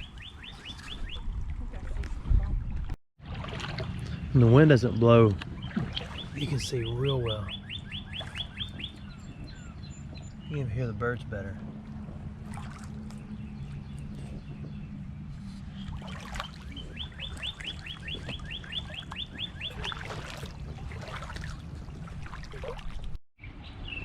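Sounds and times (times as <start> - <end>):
bird chirps: 0.0 - 1.3, 5.5 - 10.6, 13.2 - 20.3
steady low rumble: 0.0 - 24.0
songbird trilling: 5.5 - 10.6, 15.7 - 20.3.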